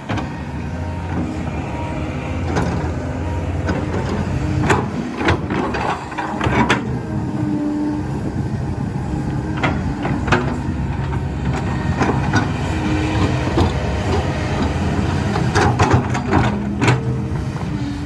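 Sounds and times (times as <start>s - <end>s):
heavy diesel engine running: 0.0s - 18.0s
metallic clanks and knocks: 3.6s - 7.0s, 9.4s - 17.7s.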